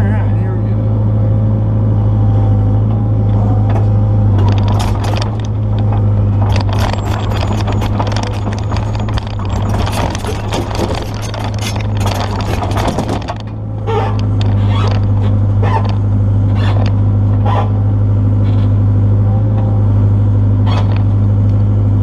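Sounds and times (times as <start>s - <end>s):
excavator diesel engine running: 0.0s - 22.0s
clanking and rattling: 3.6s - 17.7s, 20.6s - 21.2s
short knocks and squeaks: 4.4s - 17.7s, 20.6s - 21.1s.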